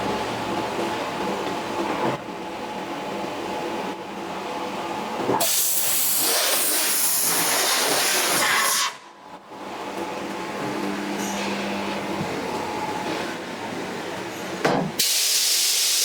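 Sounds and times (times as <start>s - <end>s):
loud gas hiss: 5.4s - 8.9s, 15.0s - 16.0s.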